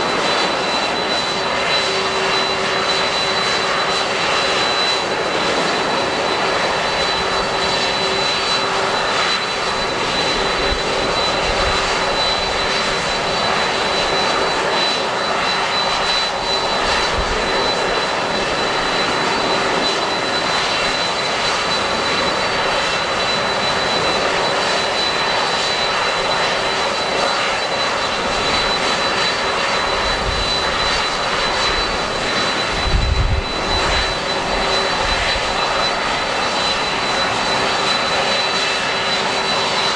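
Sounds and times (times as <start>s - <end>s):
jet engines whining: 0.0s - 39.9s
wind buffeting microphone: 30.0s - 36.1s.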